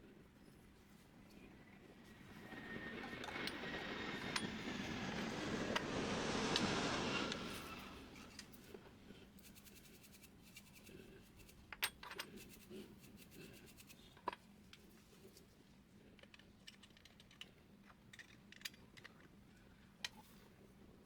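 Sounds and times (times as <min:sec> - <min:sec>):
small parts clicking and clinking: 0:16.2 - 0:20.3.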